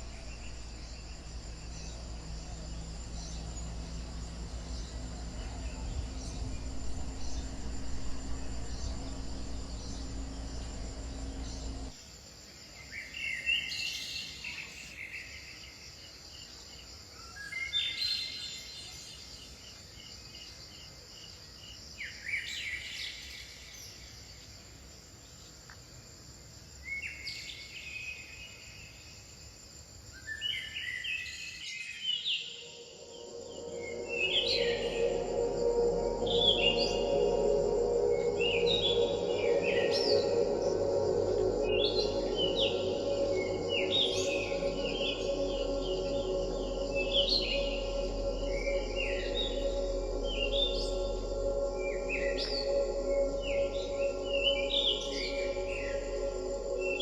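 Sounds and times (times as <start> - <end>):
low rumble: 0.0 - 12.0, 33.0 - 57.0
songbird singing: 0.0 - 12.0, 30.2 - 57.0
insects chirring: 0.0 - 57.0.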